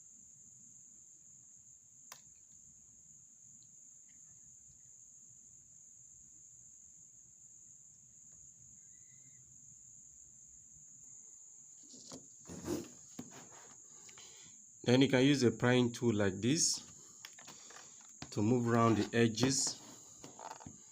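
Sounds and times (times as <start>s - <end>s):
thin high-pitched hiss: 7.5s - 9.9s.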